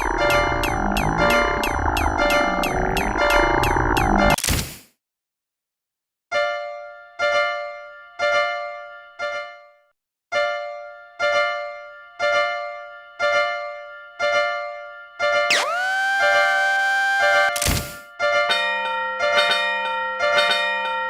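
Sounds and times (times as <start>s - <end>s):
rising siren-like tone: 0.0s - 4.4s, 15.5s - 17.6s.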